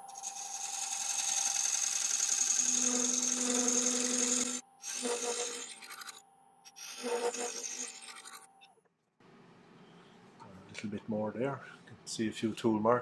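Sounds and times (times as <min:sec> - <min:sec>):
lathe hum: 0:00.0 - 0:06.2
scraper cutting wood on lathe: 0:00.2 - 0:06.2, 0:06.8 - 0:08.4.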